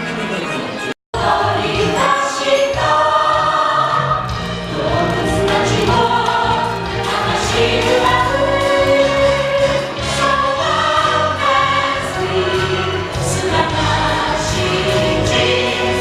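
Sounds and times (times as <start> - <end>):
instrumental accompaniment: 0.0 - 16.0
choir singing held notes: 1.2 - 16.0.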